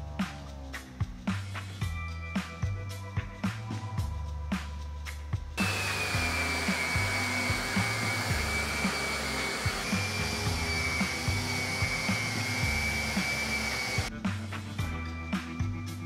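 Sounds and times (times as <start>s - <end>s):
background music with steady beat: 0.0s - 16.0s
power tool whining: 5.6s - 14.1s.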